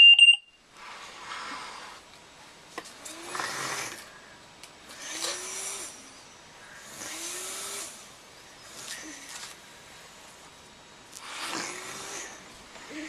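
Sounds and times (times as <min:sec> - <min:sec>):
breathing machine air rushes: 0:00.8 - 0:02.1, 0:11.1 - 0:13.0.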